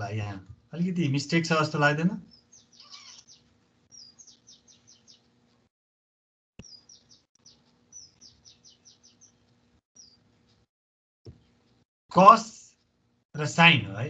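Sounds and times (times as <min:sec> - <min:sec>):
small bird chirping: 0:02.2 - 0:05.7, 0:06.6 - 0:10.7.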